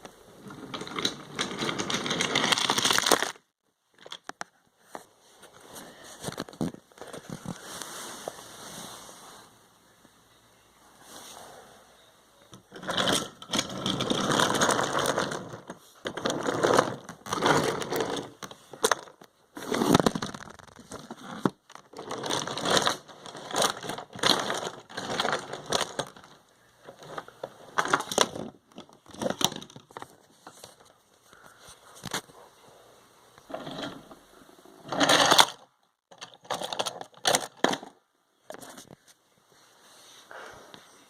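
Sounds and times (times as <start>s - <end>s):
toy trains clattering and rattling: 0.4s - 3.4s, 12.6s - 31.0s, 33.5s - 34.2s, 34.8s - 38.6s.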